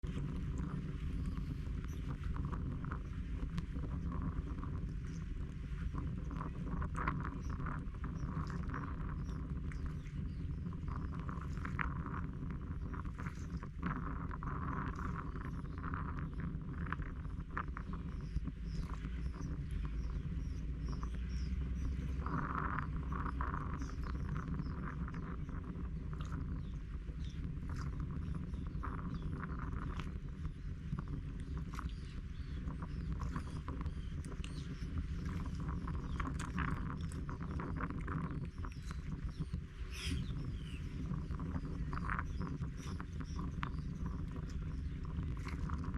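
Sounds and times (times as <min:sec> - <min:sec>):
birds chirping: 0:00.0 - 0:45.9
low coastal rumble: 0:00.0 - 0:45.9.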